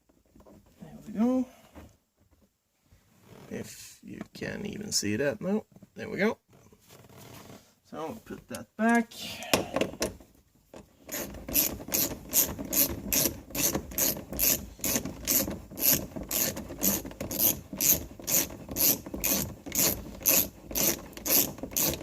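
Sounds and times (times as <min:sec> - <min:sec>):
ratchet wrench clicking: 0:11.1 - 0:22.0.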